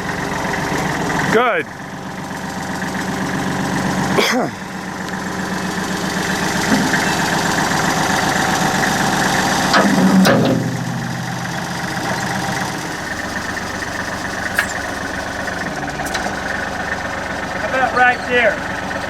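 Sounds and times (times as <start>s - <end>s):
diesel engine running: 0.0s - 19.0s
sharp metal clank: 9.6s - 13.5s, 14.4s - 15.1s.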